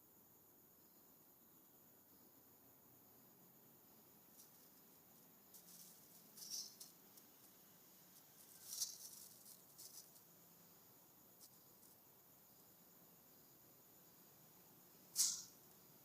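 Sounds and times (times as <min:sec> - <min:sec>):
plastic crinkling and rustling: 0:08.2 - 0:10.3.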